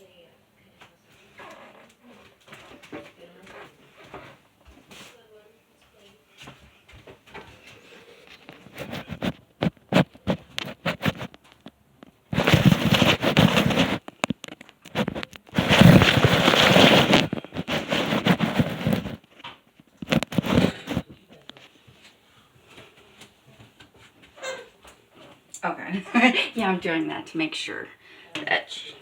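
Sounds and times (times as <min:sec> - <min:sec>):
crackling rubbing on microphone: 0:07.6 - 0:21.8.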